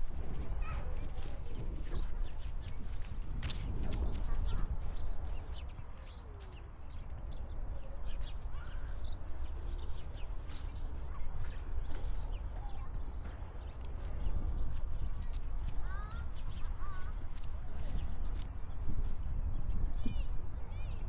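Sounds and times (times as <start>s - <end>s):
footsteps walking: 0.0s - 19.3s
faint bird calls: 7.8s - 18.2s.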